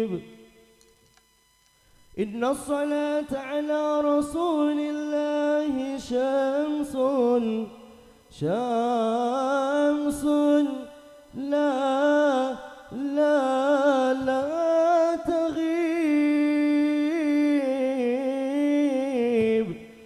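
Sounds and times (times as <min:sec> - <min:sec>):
singer breathing: 0:01.8 - 0:02.2, 0:07.9 - 0:08.3.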